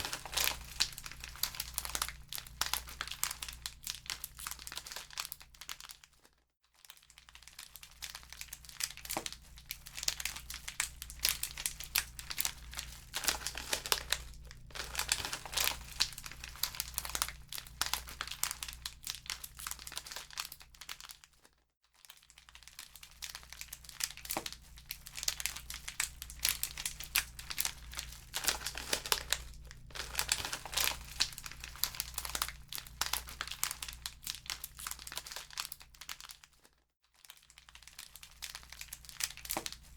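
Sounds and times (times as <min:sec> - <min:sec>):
wood fire crackling: 0:00.0 - 0:02.9, 0:11.0 - 0:19.0, 0:25.2 - 0:34.5
steady low hum: 0:09.5 - 0:19.4, 0:24.7 - 0:35.0.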